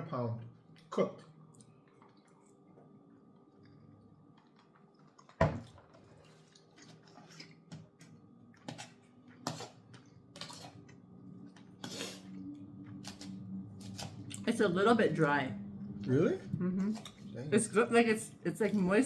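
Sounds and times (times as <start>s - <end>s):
faint steady hum: 0.0s - 19.0s
biting and chewing food: 0.7s - 14.5s.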